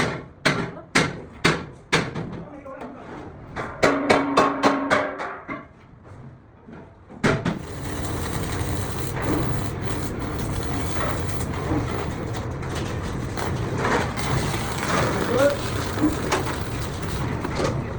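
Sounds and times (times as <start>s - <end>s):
steady machine noise: 7.6s - 17.9s.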